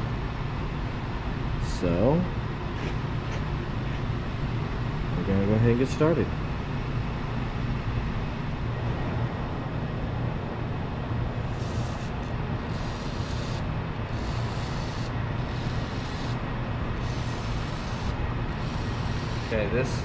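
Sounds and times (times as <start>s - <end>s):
low workshop hum: 0.0s - 20.0s.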